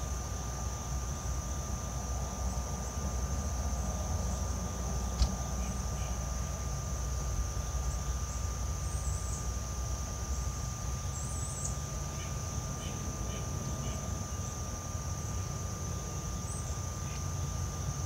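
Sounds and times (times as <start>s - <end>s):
insect drone: 0.0s - 18.0s
small ticks: 5.1s - 6.2s.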